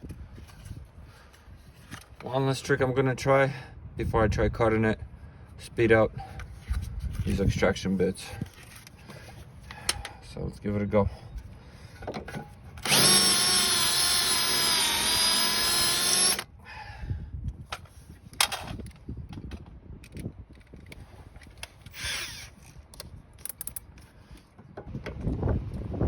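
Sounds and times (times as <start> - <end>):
tool handling clicks and knocks: 12.0 - 13.6, 17.7 - 25.2
power drill motor running: 12.8 - 16.5, 21.9 - 22.6.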